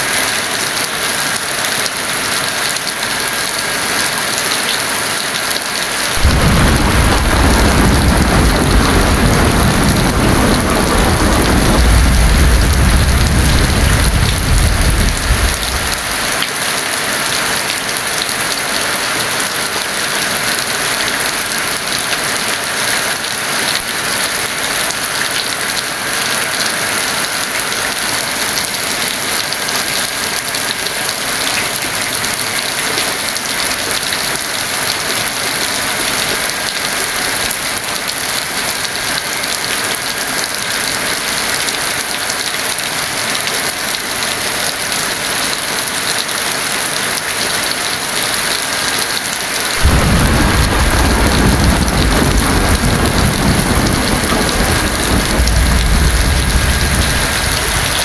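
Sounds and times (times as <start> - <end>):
heavy rain: 0.0 - 58.0
thunder rumble: 6.2 - 16.4, 49.8 - 58.0.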